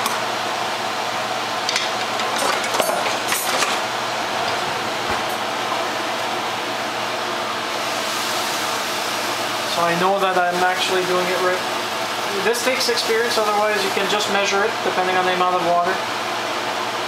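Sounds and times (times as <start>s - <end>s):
kitchenware clinking and scraping: 1.7s - 3.8s.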